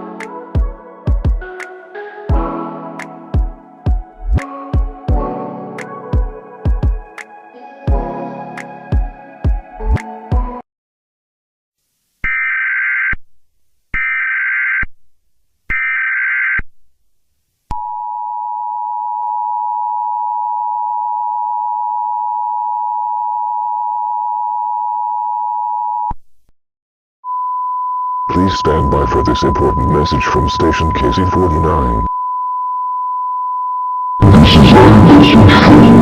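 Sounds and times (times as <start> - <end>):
two-tone attention signal: 27.3 - 34.2.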